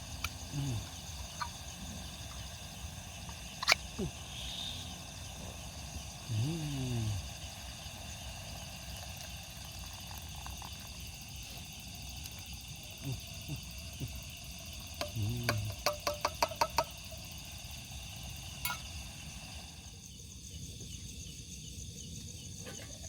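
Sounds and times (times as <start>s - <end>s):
crickets chirping: 0.0s - 23.0s
low voice-like sound: 0.5s - 1.0s, 6.3s - 7.4s, 15.0s - 15.8s.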